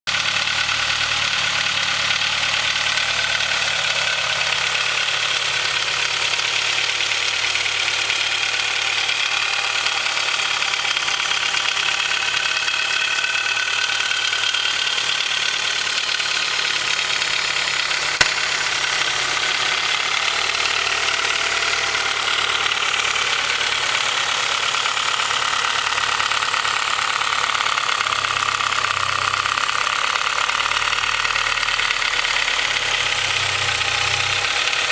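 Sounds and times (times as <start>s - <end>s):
engine idling with knocking rattle: 0.1s - 34.9s
sharp click: 18.0s - 18.6s.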